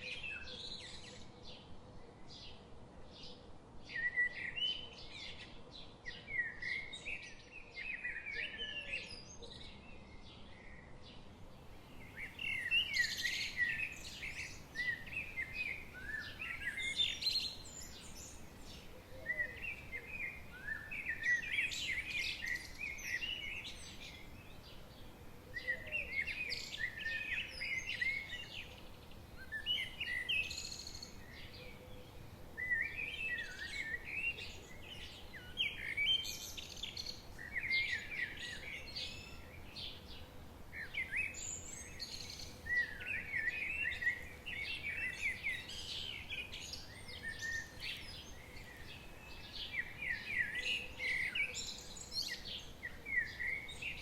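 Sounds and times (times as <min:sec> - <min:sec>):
faint ambient noise: 0:00.0 - 0:54.0
songbirds twittering: 0:00.0 - 0:54.0.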